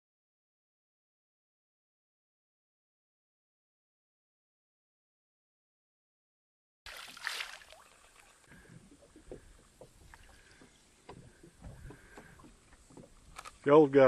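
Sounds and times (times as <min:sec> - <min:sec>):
faint knocks and clicks: 0:08.7 - 0:13.6.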